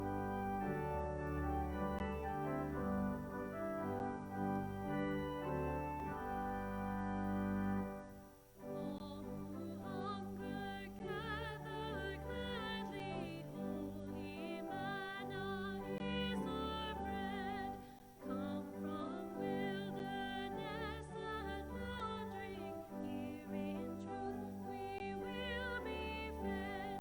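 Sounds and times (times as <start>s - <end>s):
organ chords: 0.0s - 27.0s
person singing with vibrato: 8.4s - 27.0s.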